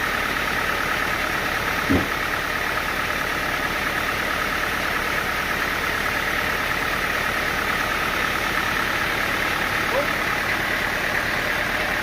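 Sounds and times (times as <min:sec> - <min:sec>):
engine running steadily: 0:00.0 - 0:12.0.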